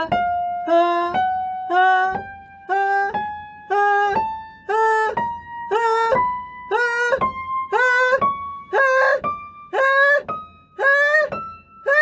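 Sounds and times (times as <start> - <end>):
person singing ah notes: 0.0 - 12.0.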